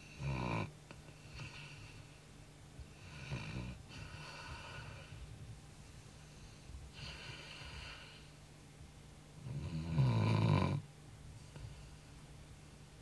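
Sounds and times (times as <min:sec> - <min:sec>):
dog snoring: 0:00.0 - 0:02.0, 0:02.9 - 0:05.2, 0:06.4 - 0:08.3, 0:09.4 - 0:10.8.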